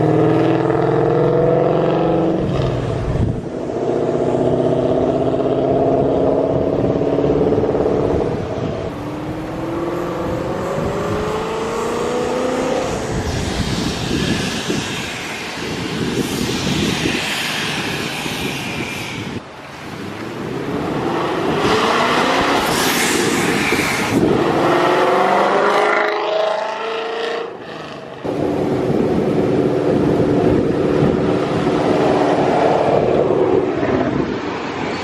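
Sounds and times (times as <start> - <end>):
car engine accelerating hard: 0.0 - 3.0, 24.1 - 34.2.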